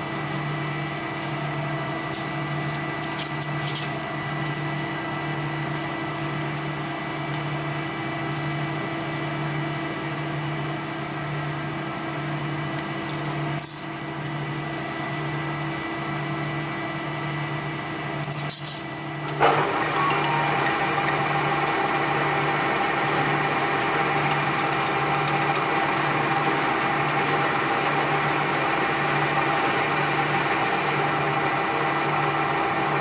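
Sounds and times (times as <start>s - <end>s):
workshop machinery humming: 0.0s - 33.0s
loud machine running: 19.2s - 33.0s.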